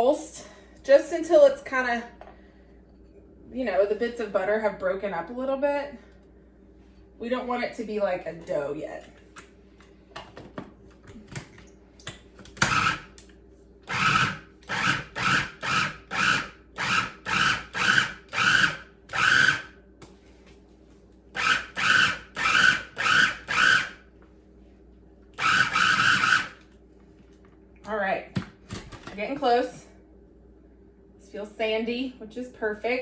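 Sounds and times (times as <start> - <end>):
food processor pulsing: 12.6 - 13.1, 13.9 - 19.7, 21.4 - 24.0, 25.4 - 26.6.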